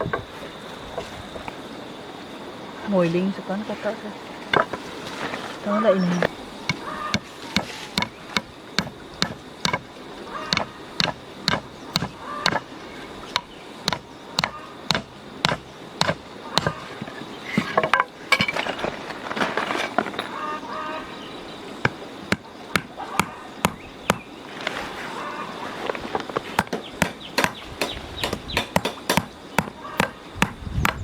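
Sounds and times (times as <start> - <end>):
knife chopping on a board: 6.7 - 9.8, 10.5 - 12.6, 13.4 - 16.8, 26.6 - 31.0.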